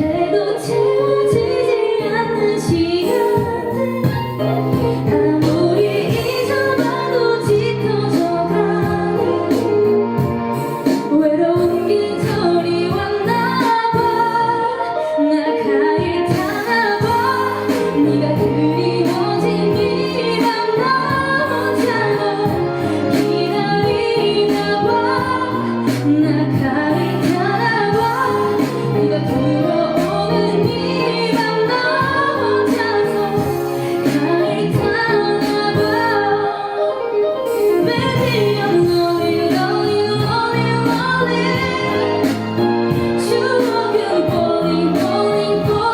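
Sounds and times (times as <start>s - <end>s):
musical accompaniment: 0.0s - 45.9s
woman singing a ballad: 0.0s - 45.9s.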